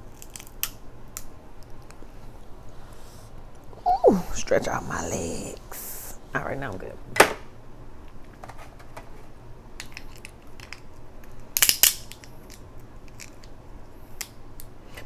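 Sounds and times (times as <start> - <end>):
crab shell cracking: 0.1 - 1.8, 9.8 - 13.6
small shell clicks: 9.8 - 13.6.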